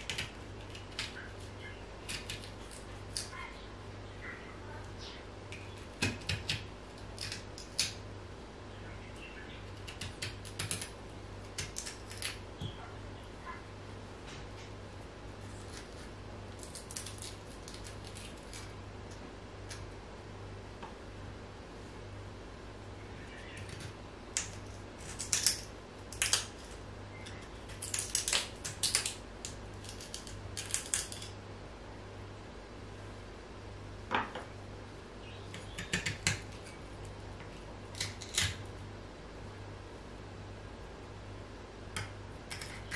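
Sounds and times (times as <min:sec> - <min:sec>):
utensil cutting crisp radish: 0:00.0 - 0:03.3, 0:05.5 - 0:08.0, 0:09.6 - 0:12.8, 0:15.4 - 0:20.0, 0:35.5 - 0:38.6, 0:42.0 - 0:42.9
low steady hum: 0:00.0 - 0:42.9.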